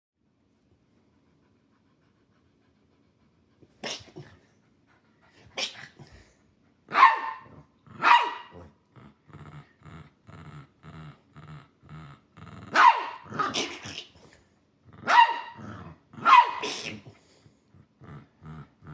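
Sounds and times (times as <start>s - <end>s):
dog barking: 6.9s - 8.6s, 12.7s - 13.8s, 15.0s - 15.6s, 16.2s - 16.9s.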